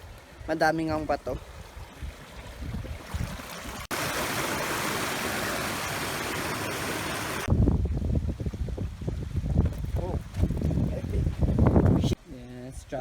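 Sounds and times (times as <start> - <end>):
wind buffeting microphone: 0.0 - 3.9, 7.4 - 12.2
rushing water: 0.0 - 7.5.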